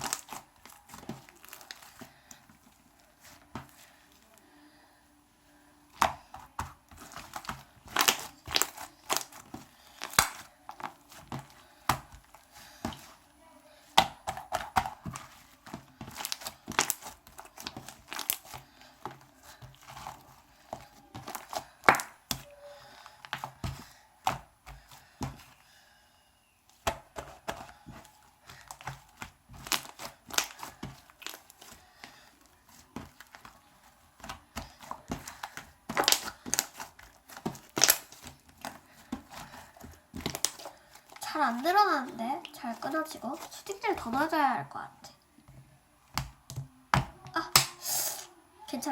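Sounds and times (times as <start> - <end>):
slime clicking and popping: 0.0 - 2.4, 6.0 - 13.1, 14.0 - 20.2, 21.1 - 22.5, 26.7 - 31.8, 34.2 - 41.8.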